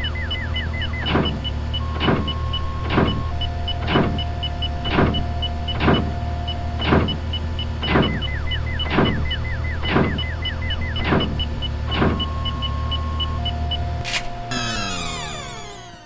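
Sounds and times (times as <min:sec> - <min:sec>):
held tone: 0:14.5 - 0:16.0.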